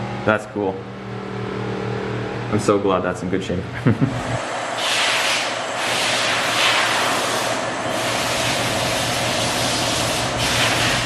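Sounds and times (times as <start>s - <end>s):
sanding pad hissing on fiberglass: 4.8s - 11.0s.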